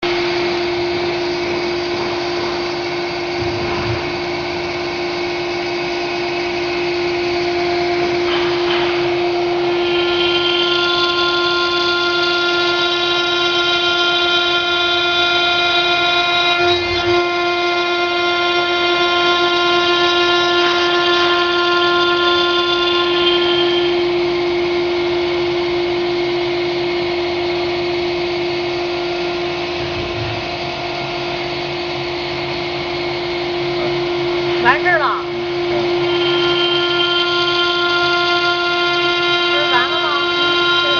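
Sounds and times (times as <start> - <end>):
router spindle whining: 0.0 - 40.9.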